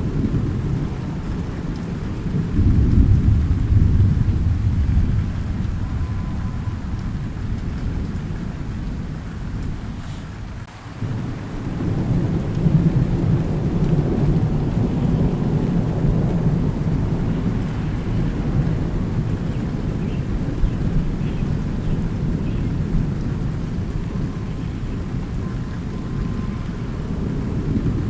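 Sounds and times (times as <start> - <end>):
rolling thunder: 0.0 - 28.0
steady rain: 0.0 - 28.0.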